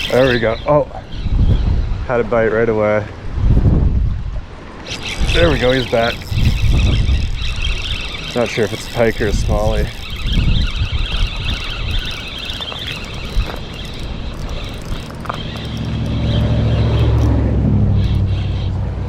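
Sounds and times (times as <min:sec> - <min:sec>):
high fluttering whir: 0:00.0 - 0:00.6, 0:04.8 - 0:19.0
wind buffeting microphone: 0:00.0 - 0:19.0.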